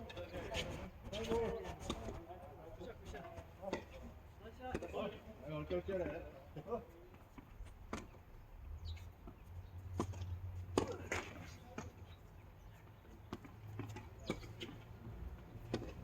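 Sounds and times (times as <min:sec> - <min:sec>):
tennis ball knocks: 0:04.7 - 0:05.0, 0:09.3 - 0:12.0, 0:13.3 - 0:14.8.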